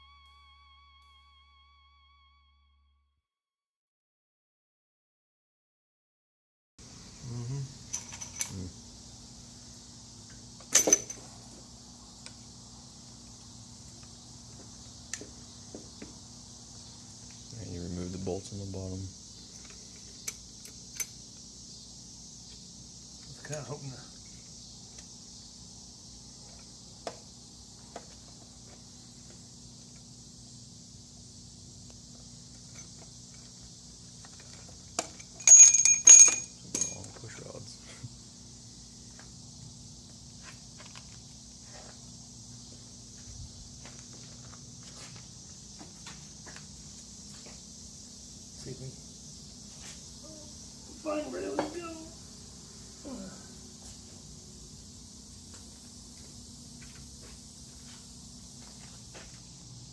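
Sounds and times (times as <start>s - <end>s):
faint high-pitched hiss: 6.8s - 35.3s, 45.8s - 59.8s
crickets chirring: 6.8s - 59.9s
metal tools clinking: 7.9s - 8.6s, 10.7s - 11.3s, 35.1s - 37.2s.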